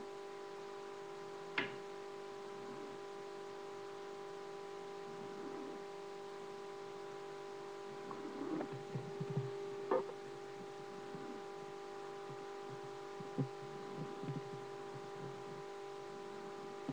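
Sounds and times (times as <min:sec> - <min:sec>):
steady electrical hum: 0:00.0 - 0:16.9
soft snoring: 0:02.5 - 0:03.2, 0:05.0 - 0:06.0, 0:07.9 - 0:16.9.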